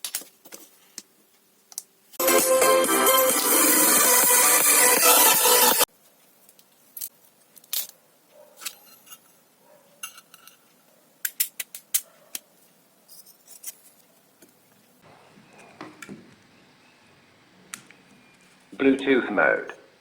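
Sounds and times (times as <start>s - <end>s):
music: 2.2s - 5.9s.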